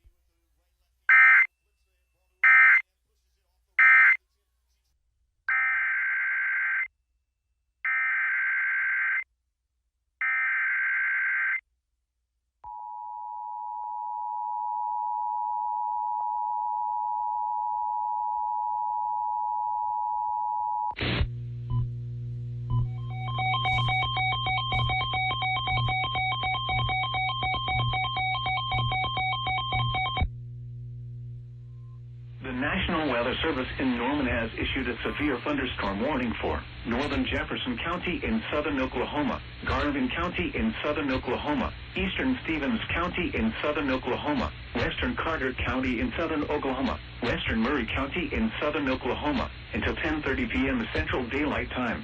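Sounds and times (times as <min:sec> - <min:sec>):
loud electronic buzz: 0:21.0 - 0:33.2
low hum: 0:21.0 - 0:33.4
dual-tone attention signal: 0:22.7 - 0:30.4
warbling data tones: 0:22.8 - 0:30.3.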